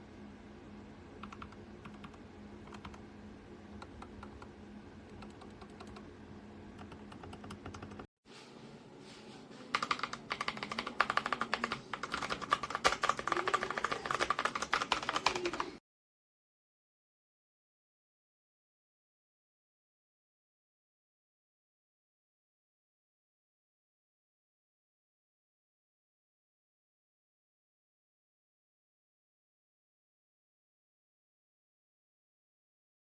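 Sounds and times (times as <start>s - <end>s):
steady low hum: 0.0s - 15.2s
mechanical keyboard typing: 1.2s - 3.0s, 3.8s - 6.1s, 6.8s - 8.1s, 9.7s - 15.8s.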